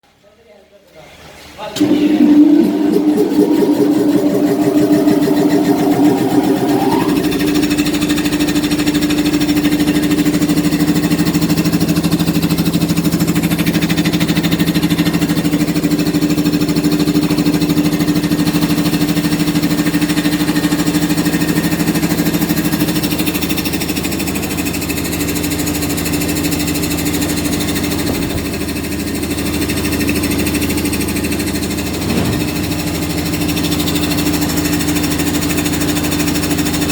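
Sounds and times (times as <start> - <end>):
air compressor running: 1.8 - 12.2.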